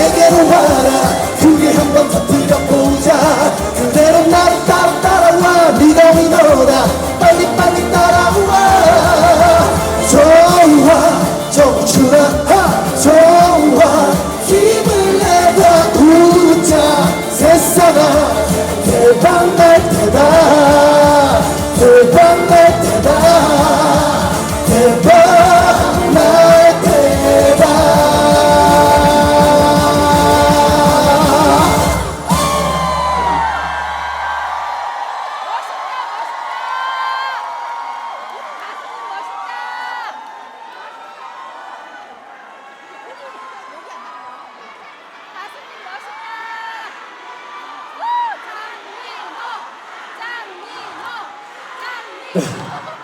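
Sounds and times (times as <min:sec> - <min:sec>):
person singing: 0:00.0 - 0:34.3
band playing through a pa: 0:00.0 - 0:35.1.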